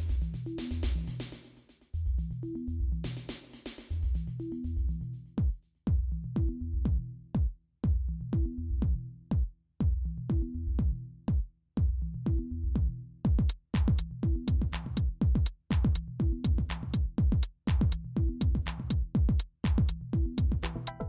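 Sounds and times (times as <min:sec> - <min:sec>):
low synth bassline: 0:00.0 - 0:01.2, 0:02.0 - 0:03.2, 0:03.9 - 0:05.4, 0:06.0 - 0:07.3, 0:08.0 - 0:09.2, 0:10.0 - 0:11.2, 0:12.0 - 0:13.2, 0:19.9 - 0:21.0
punchy kick drums: 0:05.4 - 0:21.0.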